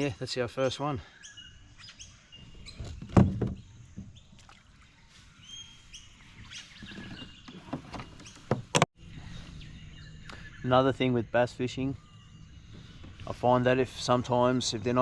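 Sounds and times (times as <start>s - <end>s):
birds chirping: 0.0s - 15.0s
water sloshing: 2.7s - 5.0s.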